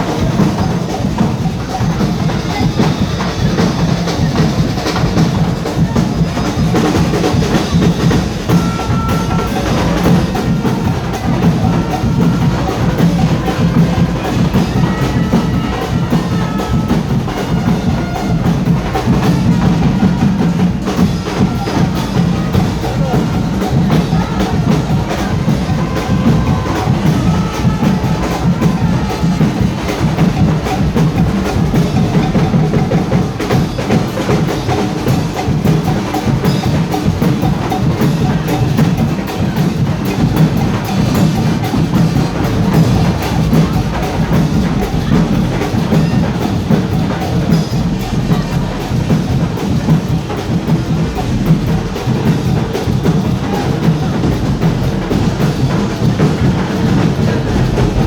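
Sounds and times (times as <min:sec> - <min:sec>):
bass drums thudding: 0:54.2 - 0:58.0.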